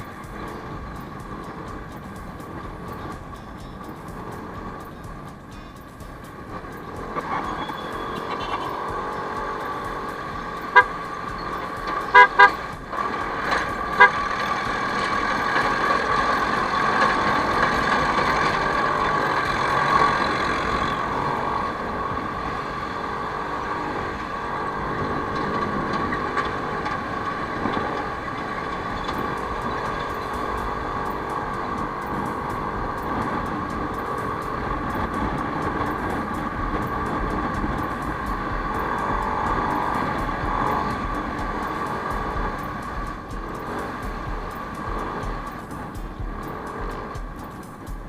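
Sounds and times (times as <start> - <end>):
scooter riding noise: 0.0 - 48.0
traffic: 0.0 - 48.0
vehicle horn toots: 7.2 - 19.1.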